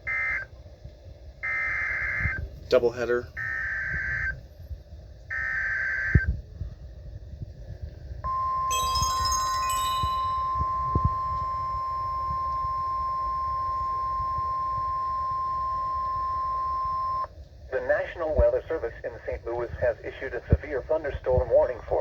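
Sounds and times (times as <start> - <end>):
steady warning alarm tone: 0.0 - 0.4, 1.4 - 2.4, 3.4 - 4.4, 5.3 - 6.2, 8.2 - 17.3
chime-like tones: 8.3 - 11.4
buzzy data tone: 8.3 - 17.3.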